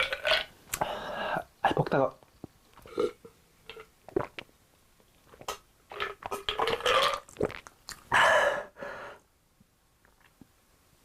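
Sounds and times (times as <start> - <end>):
chewing and wet mouth clicks: 5.3 - 8.1.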